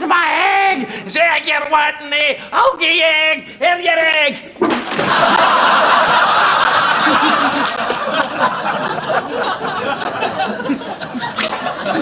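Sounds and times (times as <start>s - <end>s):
studio audience laughing: 5.0s - 12.0s.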